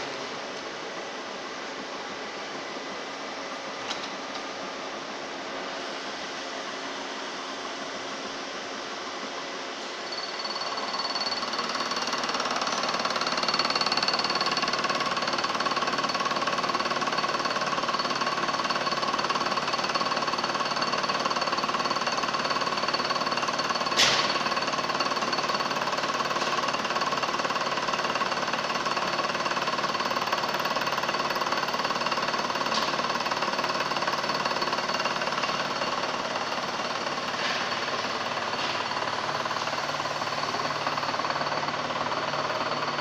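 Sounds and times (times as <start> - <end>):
milling machine whining: 9.3 - 43.0.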